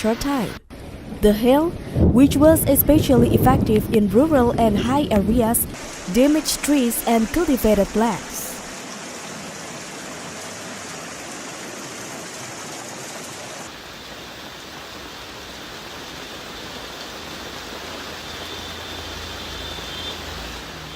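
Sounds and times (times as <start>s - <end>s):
low rumble: 0.5s - 6.1s
hail and heavy rain pelting: 1.9s - 20.8s.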